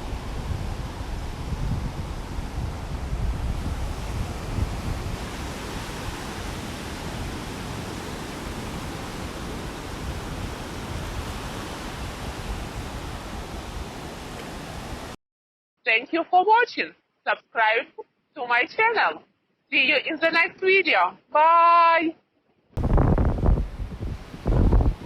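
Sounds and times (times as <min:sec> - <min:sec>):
ocean surf: 0:00.0 - 0:15.2, 0:22.8 - 0:25.0
wind buffeting microphone: 0:00.0 - 0:15.2, 0:22.8 - 0:25.0.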